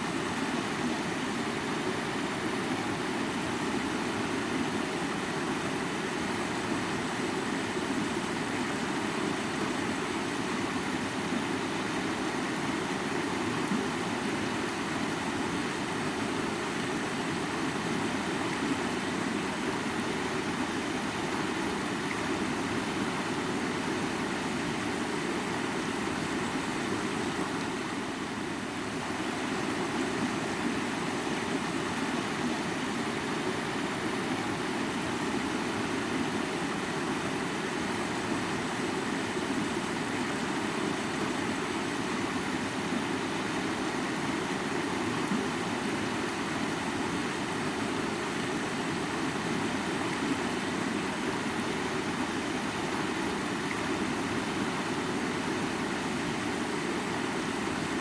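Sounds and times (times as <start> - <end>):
river water flowing: 0.0 - 58.0.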